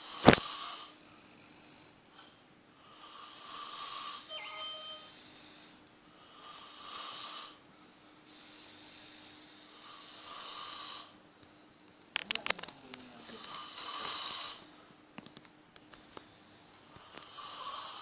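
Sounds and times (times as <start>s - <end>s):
person snoring heavily: 13.3s - 14.6s, 17.2s - 18.0s.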